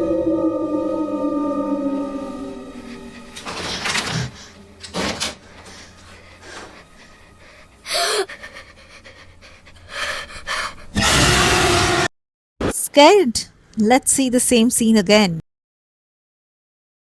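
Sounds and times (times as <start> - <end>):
person gasping and breathing hard: 6.2 - 11.0.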